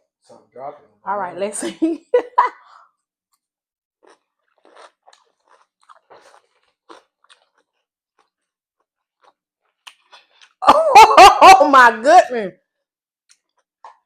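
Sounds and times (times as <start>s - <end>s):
chewing crisp food crunching: 4.0s - 10.6s, 13.2s - 14.0s.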